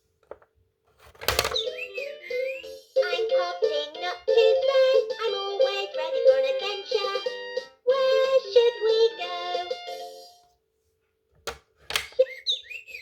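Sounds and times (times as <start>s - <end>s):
toy playing electronic tune: 1.4s - 10.4s.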